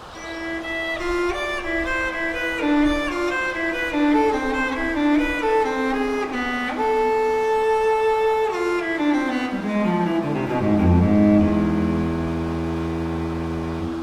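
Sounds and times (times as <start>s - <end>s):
slow bowed string melody: 0.0s - 14.0s
low sustained bass notes: 6.7s - 14.0s.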